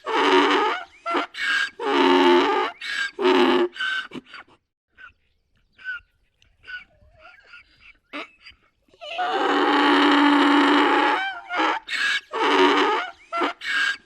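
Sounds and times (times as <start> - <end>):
donkey braying: 0.0 - 14.0
donkey wheezy breaths: 2.6 - 4.7.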